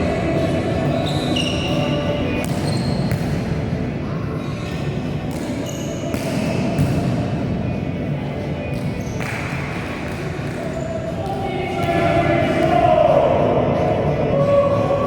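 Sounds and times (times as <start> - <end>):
sneakers squeaking on gym floor: 0.6 - 3.7, 4.3 - 7.1, 8.6 - 11.1.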